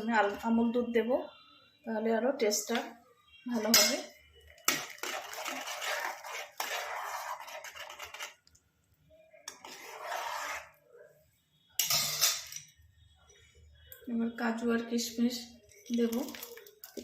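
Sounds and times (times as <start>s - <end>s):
metal spoon scraping a pan: 3.5s - 8.6s, 9.4s - 10.8s, 11.8s - 12.7s.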